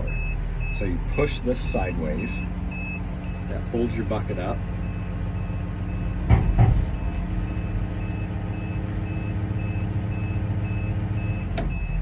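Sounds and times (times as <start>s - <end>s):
excavator engine running: 0.0s - 12.0s
short high beeps: 2.2s - 3.6s.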